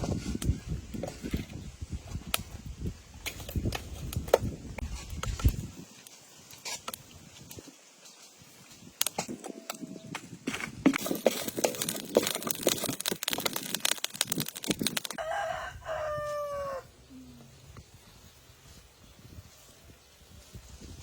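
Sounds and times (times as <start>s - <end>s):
rustling and knocking: 9.1s - 15.2s
rooster crowing: 15.2s - 16.9s.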